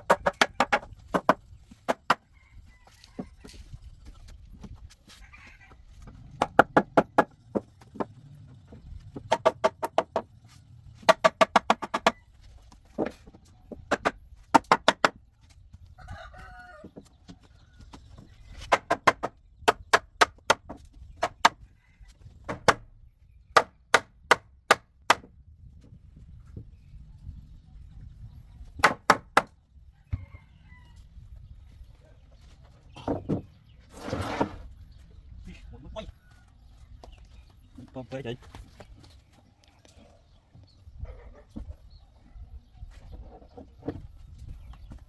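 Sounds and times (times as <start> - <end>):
hammer striking wood: 11.0 - 12.2, 22.5 - 22.9, 23.6 - 25.3, 28.8 - 29.5.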